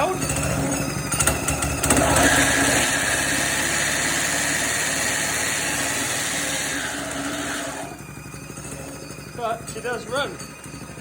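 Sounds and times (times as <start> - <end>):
lawn mower engine running: 0.0 - 11.0.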